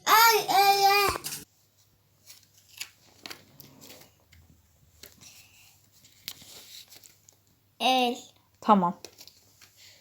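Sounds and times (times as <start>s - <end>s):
soft rustles: 1.6s - 7.5s.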